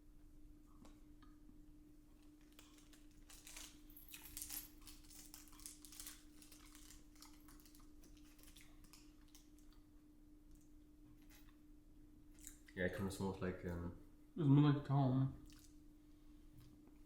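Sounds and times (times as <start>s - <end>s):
snack cake crackling: 4.7s - 9.9s, 12.3s - 12.8s.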